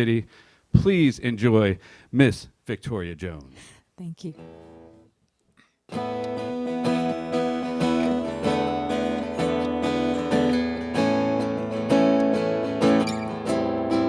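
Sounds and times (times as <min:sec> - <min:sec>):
acoustic guitar strumming: 0:05.9 - 0:14.0.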